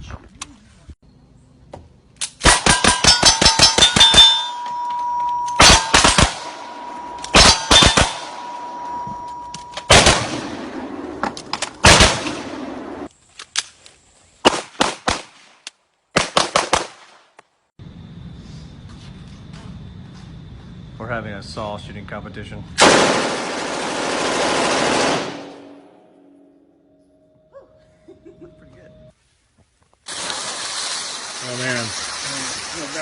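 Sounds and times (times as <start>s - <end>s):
steady ringing tone: 2.6s - 11.1s
gunshots with echo: 5.6s - 9.0s, 9.8s - 13.1s.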